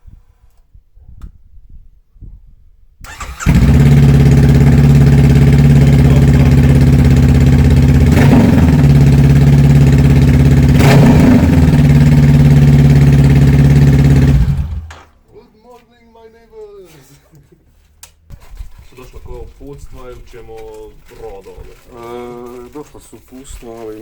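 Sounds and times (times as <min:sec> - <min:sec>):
motorcycle engine starting and idling: 0:03.0 - 0:15.1
sharp exhaust crack: 0:03.1 - 0:15.2.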